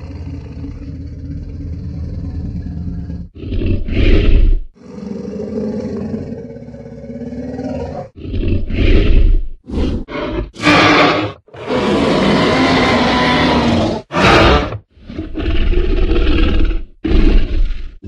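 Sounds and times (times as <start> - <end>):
dinosaur growling: 0.0 - 18.0
dinosaur roaring: 0.0 - 18.0
dinosaur snarls: 0.0 - 18.0.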